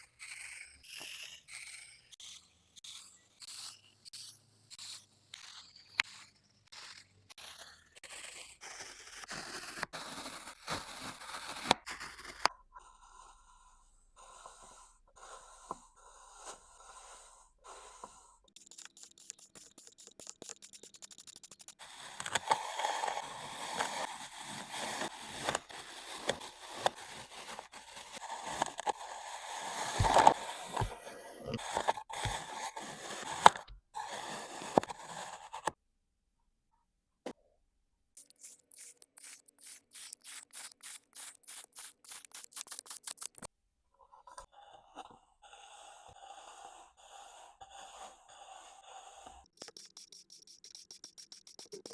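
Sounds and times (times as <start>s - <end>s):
tool cutting kinetic sand: 0.0s - 35.8s, 38.2s - 43.5s, 44.3s - 51.9s
rapid fine ticking: 18.5s - 21.8s, 49.4s - 51.9s.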